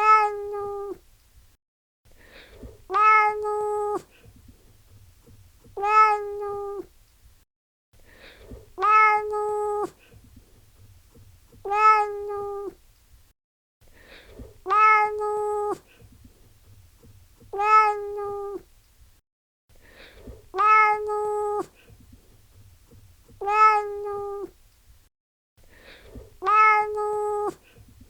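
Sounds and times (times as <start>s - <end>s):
cat meowing: 0.0s - 1.0s, 2.9s - 4.1s, 5.7s - 6.9s, 8.8s - 10.0s, 11.6s - 12.8s, 14.7s - 15.8s, 17.5s - 18.6s, 20.5s - 21.7s, 23.4s - 24.5s, 26.4s - 27.6s.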